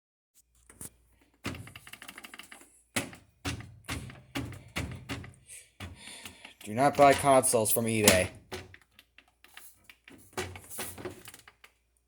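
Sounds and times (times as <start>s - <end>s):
sharp clicks and knocks: 1.4s - 11.8s.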